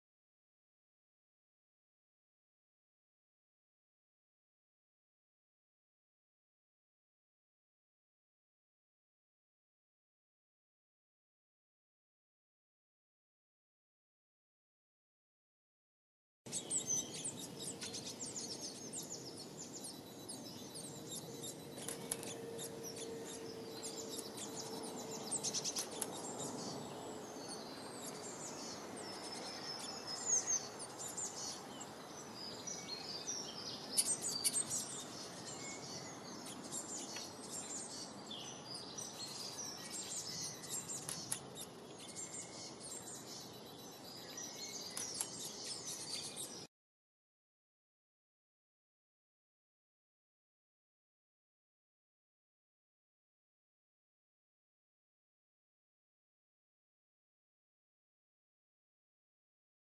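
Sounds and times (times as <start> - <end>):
small birds chirping and trilling: 16.5 - 46.7.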